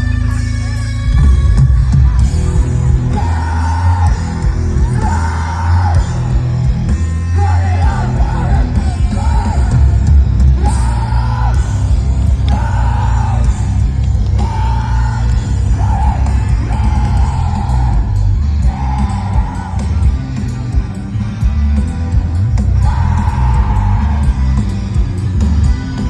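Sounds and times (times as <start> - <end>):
live rock music: 0.0 - 26.0
singer yelling: 2.7 - 13.8, 14.4 - 20.1, 22.7 - 24.6.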